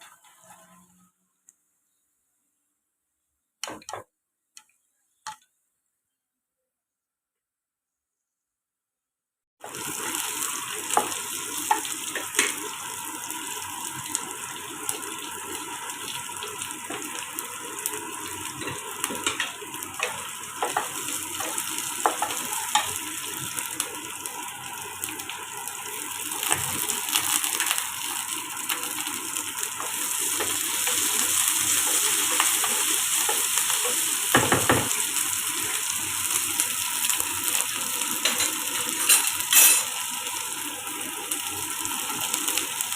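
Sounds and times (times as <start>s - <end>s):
food sizzling in hot oil: 9.6s - 42.9s.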